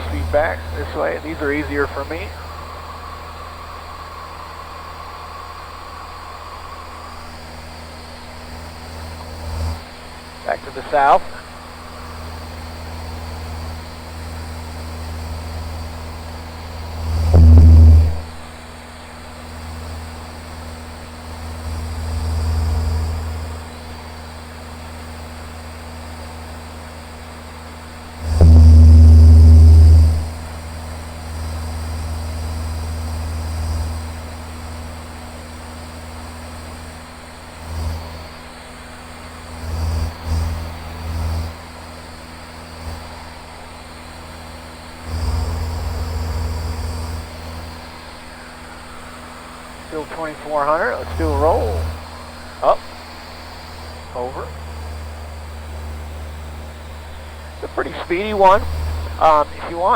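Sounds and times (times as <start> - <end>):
loud burst of noise: 0.0 - 18.6, 28.2 - 30.6, 42.6 - 59.9
aircraft engine and propeller drone: 0.0 - 28.4, 29.4 - 59.9.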